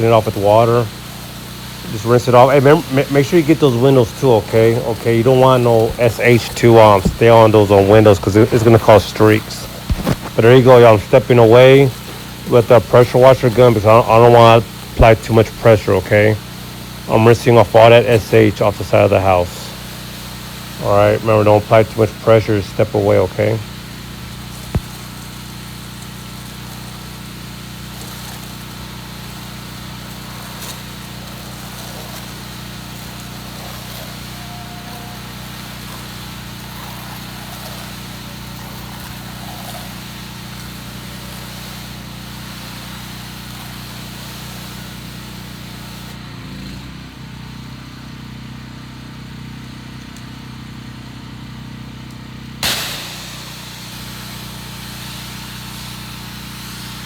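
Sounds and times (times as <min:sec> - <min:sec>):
water spraying on siding: 0:00.0 - 0:47.6, 0:52.6 - 0:57.0
pressure washer engine running: 0:00.0 - 0:57.0
short sharp burst: 0:52.6 - 0:57.0.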